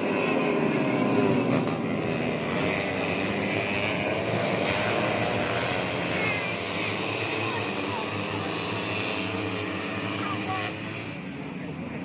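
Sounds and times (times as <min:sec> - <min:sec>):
motorcycle engines revving: 0:00.0 - 0:12.0.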